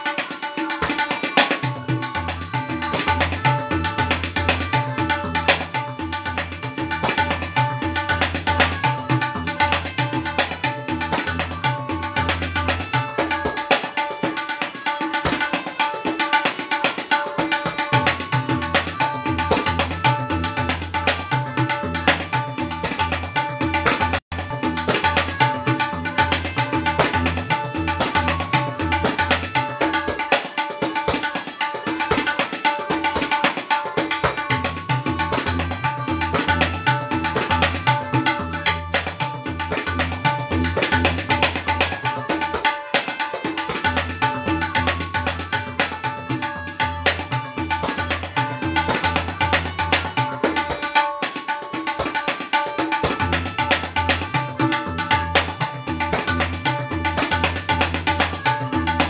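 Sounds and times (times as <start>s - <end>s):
tabla playing: 0.0s - 59.0s.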